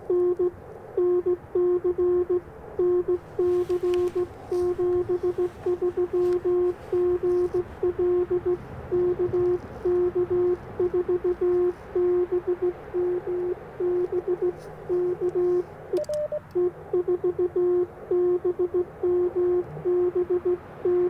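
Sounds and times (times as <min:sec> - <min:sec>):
morse code tone: 0:00.0 - 0:21.0
sharp clicks: 0:12.5 - 0:16.6.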